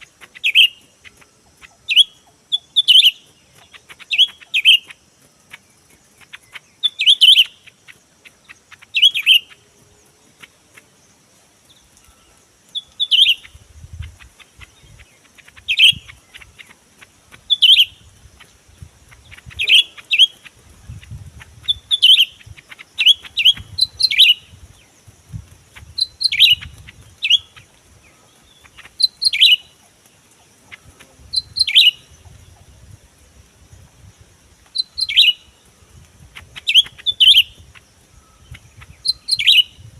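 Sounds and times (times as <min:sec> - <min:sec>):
steady high hiss: 0:00.0 - 0:39.9
bird chirps sweeping down: 0:39.0 - 0:39.8.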